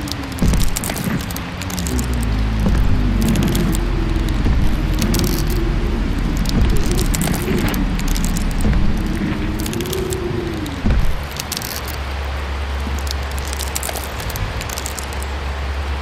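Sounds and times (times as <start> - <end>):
crackling: 0.0 - 16.0
heavy low rumble: 0.0 - 16.0
wavering tone: 1.7 - 11.2.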